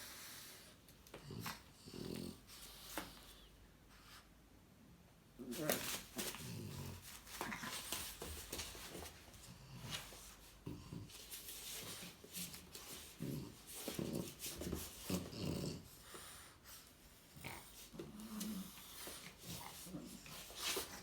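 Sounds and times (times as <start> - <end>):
dogs growling and grunting: 1.2 - 2.5, 5.4 - 7.9, 13.0 - 16.2.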